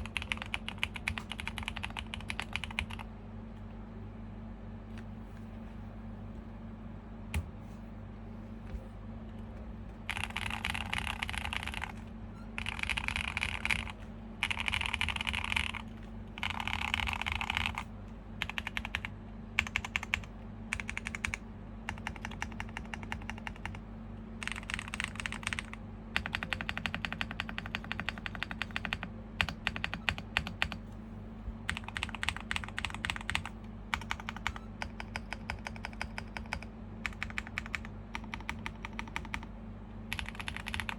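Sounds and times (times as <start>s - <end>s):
mechanical keyboard typing: 0.0s - 3.1s, 10.1s - 12.0s, 12.6s - 23.8s, 24.4s - 30.8s, 31.7s - 39.5s, 40.1s - 40.9s.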